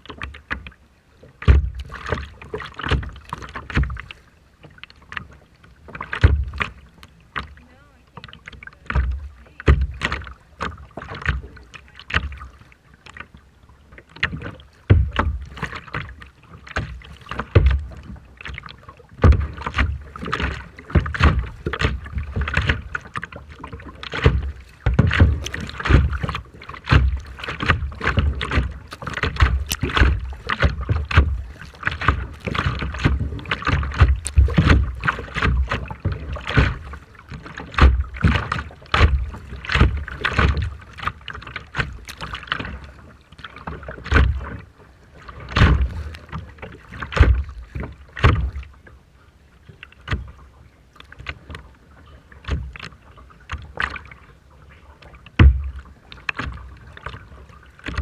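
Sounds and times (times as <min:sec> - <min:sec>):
sea water splashing and slapping: 0:00.0 - 0:58.0.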